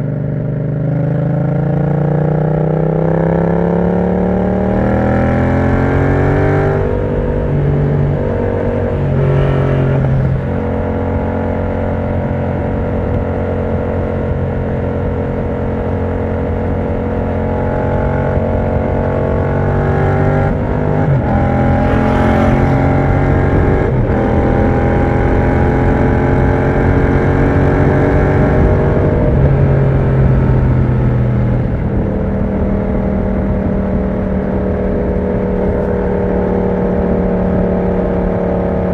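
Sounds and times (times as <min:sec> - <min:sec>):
motorcycle engine while riding: 0:00.0 - 0:38.9.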